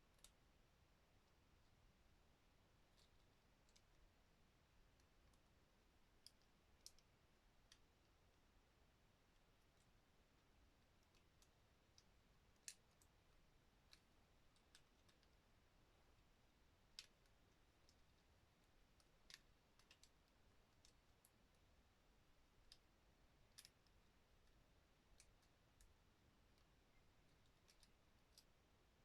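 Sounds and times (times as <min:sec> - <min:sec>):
plastic toy parts clicking: 0:19.0 - 0:21.0, 0:23.5 - 0:24.6, 0:27.3 - 0:28.5.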